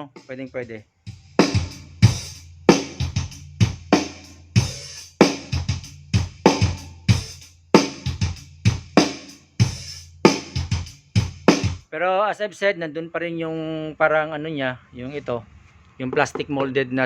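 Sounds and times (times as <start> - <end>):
drum-heavy music through speaker: 0.0 - 11.8.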